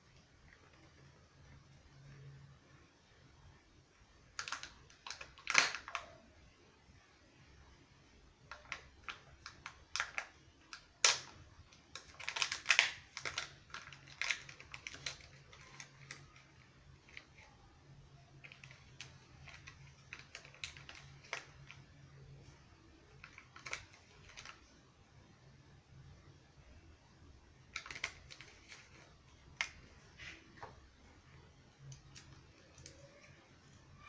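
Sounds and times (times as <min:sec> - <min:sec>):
plastic packaging crinkling: 0:04.4 - 0:06.2, 0:08.5 - 0:17.5, 0:18.3 - 0:21.9, 0:23.1 - 0:24.7, 0:27.6 - 0:30.9.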